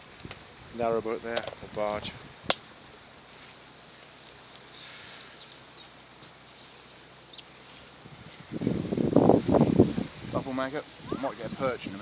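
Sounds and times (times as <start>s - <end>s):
wind buffeting microphone: 8.0s - 12.0s.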